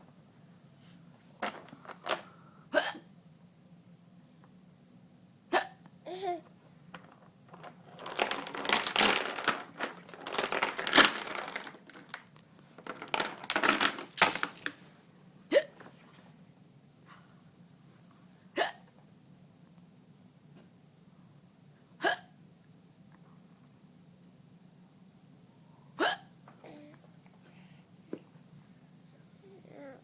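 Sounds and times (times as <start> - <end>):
person hiccuping: 2.8 - 3.1, 5.5 - 5.8, 18.6 - 18.9, 22.0 - 22.3, 26.0 - 26.3.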